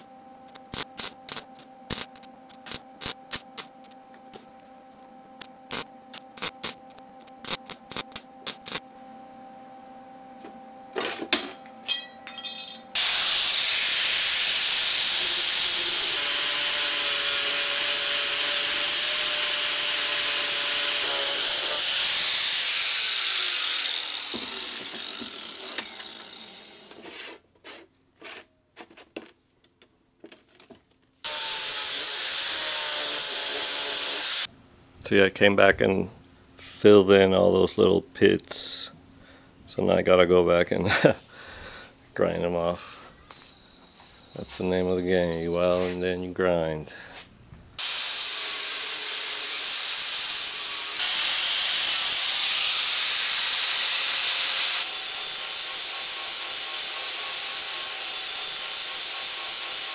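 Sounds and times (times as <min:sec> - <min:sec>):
welder crackling: 0:00.0 - 0:04.0, 0:05.4 - 0:08.8, 0:13.0 - 0:27.2
welder hum: 0:00.0 - 0:09.0, 0:13.0 - 0:27.4, 0:31.2 - 0:34.5, 0:47.8 - 0:59.9
angle grinder running: 0:13.0 - 0:27.3, 0:31.2 - 0:34.5, 0:47.8 - 0:59.9.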